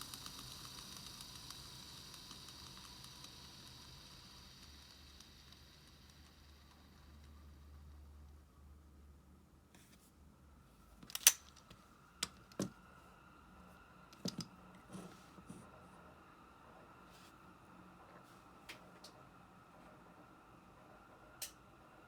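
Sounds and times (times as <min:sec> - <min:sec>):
faint steady hum: 0:00.0 - 0:22.0
metal parts and tools clicking: 0:11.0 - 0:12.7.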